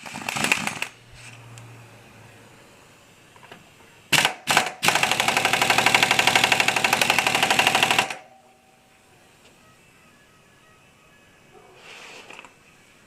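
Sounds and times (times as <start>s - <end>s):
impact wrench hammering: 4.1s - 8.3s.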